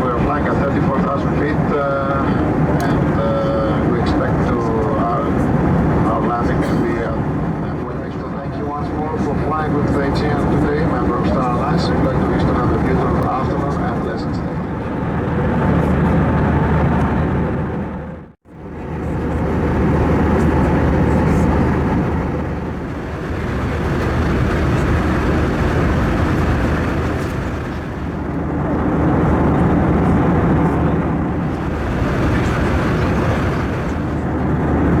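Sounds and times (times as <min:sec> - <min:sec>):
jet engines roaring: 0:00.0 - 0:35.0
low hum: 0:09.7 - 0:35.0.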